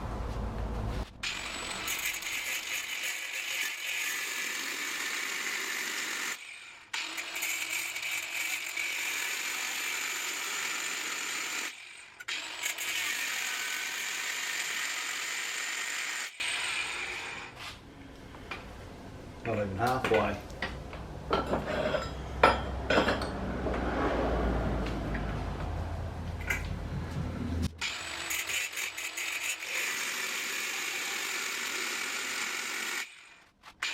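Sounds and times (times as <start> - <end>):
angle grinder cutting steel: 1.2 - 17.7, 27.8 - 33.9.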